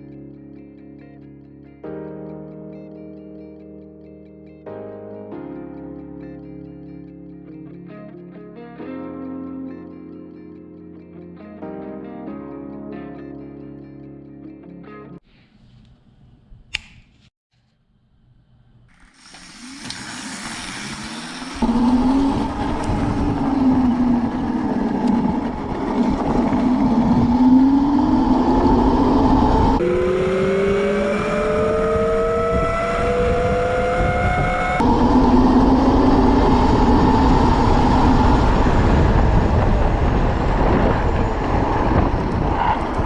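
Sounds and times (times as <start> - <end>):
electric motor whining: 19.1 - 43.0
wind noise: 20.6 - 43.0.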